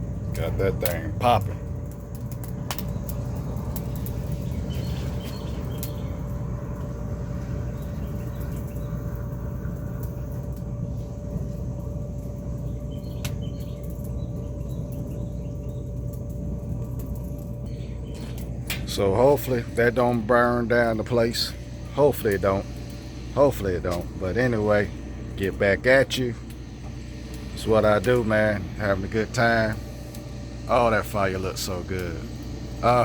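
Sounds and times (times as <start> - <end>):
charcoal fire crackling: 0.0 - 33.0
low rumble: 0.0 - 33.0
sharp pops of fire: 0.3 - 10.7, 12.6 - 15.5.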